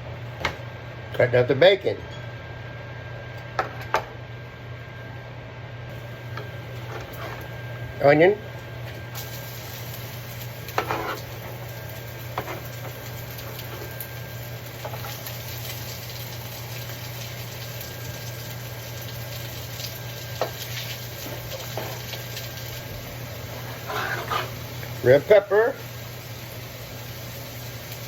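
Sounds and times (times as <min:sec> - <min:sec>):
onion sizzling in a pan: 0:05.9 - 0:28.0.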